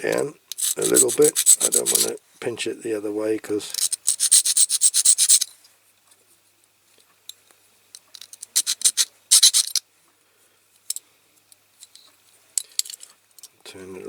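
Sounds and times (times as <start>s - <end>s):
light scratches and clicks: 0.5s - 2.2s
file rasping on metal: 0.6s - 2.1s, 3.8s - 5.4s.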